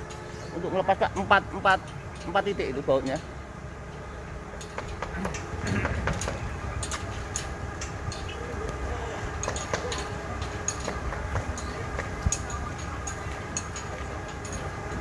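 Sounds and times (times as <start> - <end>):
low engine rumble: 0.0 - 15.0
sharp metallic clinks and taps: 3.9 - 8.4, 9.4 - 15.0.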